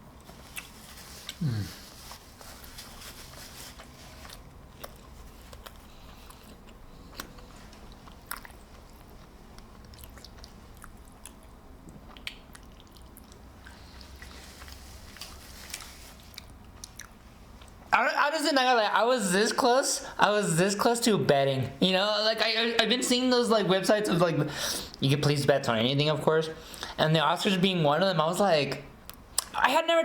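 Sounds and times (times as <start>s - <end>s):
person chewing food: 0.1s - 17.8s
mouth clicks and smacks: 9.6s - 13.4s.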